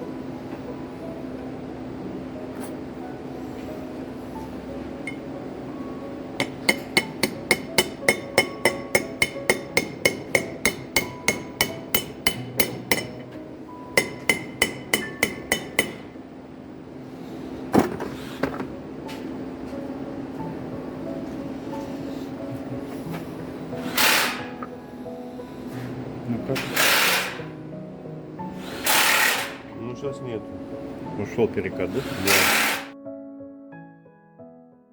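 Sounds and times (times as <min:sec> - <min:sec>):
low steady hum: 0:00.0 - 0:17.7
hammer tapping on metal: 0:06.4 - 0:16.2.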